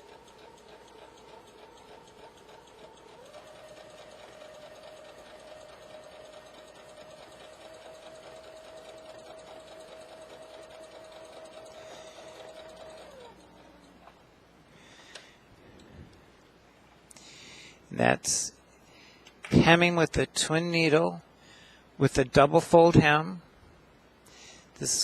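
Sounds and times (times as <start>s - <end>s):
needle ticking: 0.0s - 14.1s
sewing machine motor whine: 0.0s - 14.2s.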